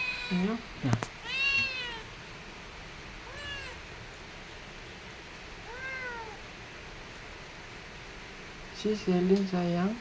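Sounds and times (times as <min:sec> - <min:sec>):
kitten meowing: 0:01.2 - 0:02.1, 0:03.2 - 0:03.8, 0:05.7 - 0:06.4.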